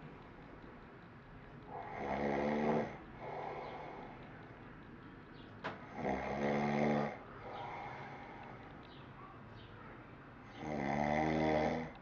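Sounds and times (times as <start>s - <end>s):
man snoring: 1.7s - 3.4s, 5.9s - 7.8s, 10.6s - 12.0s.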